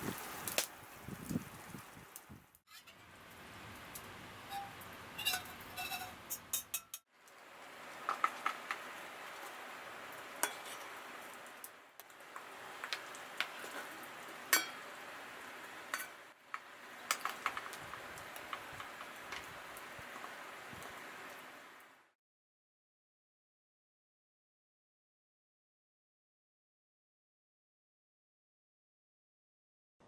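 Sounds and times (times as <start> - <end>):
food sizzling in a metal cup: 2.7 - 7.0, 8.0 - 11.6, 12.2 - 21.1
utensil clinking against cup: 4.4 - 7.0.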